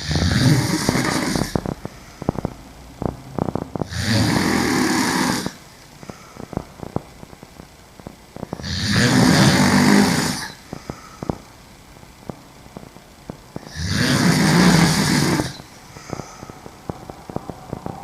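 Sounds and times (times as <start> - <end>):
woman snoring: 0.0 - 6.6, 8.6 - 11.4, 13.6 - 18.0
faint clicking: 4.8 - 9.2, 9.8 - 13.7, 14.4 - 18.0.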